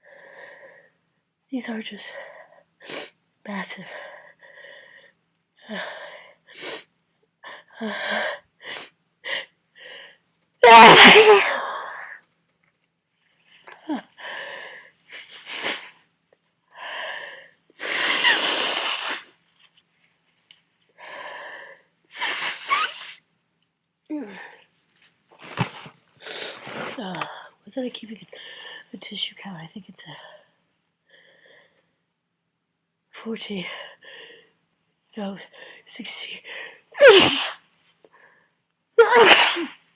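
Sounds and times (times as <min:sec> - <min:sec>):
person sneezing loudly: 0:10.6 - 0:11.6, 0:22.2 - 0:23.1, 0:37.0 - 0:37.6, 0:39.0 - 0:39.7.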